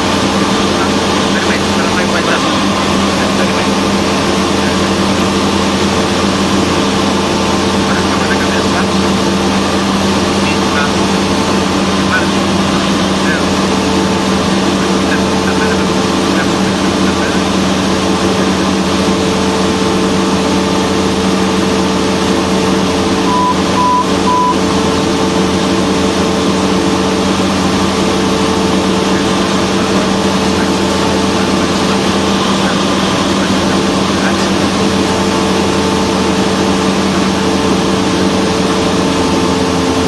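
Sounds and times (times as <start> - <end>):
propeller plane engine droning: 0.0 - 40.0
short electronic beeps: 23.2 - 24.7.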